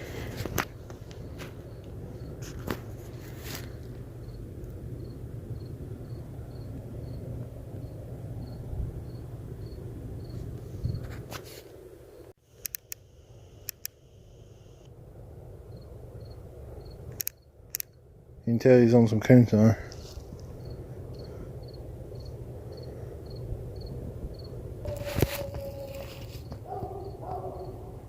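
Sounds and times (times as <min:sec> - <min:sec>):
low steady rumble: 0:00.0 - 0:24.9
insect chirping: 0:01.2 - 0:02.4, 0:03.2 - 0:11.0, 0:12.1 - 0:14.9, 0:15.7 - 0:18.1, 0:20.1 - 0:28.0
sharp clicks: 0:12.6 - 0:14.0, 0:17.1 - 0:18.0.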